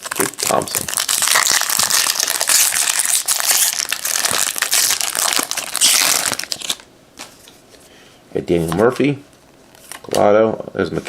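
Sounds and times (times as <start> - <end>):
foil wrapper crinkling: 0.0 - 6.9.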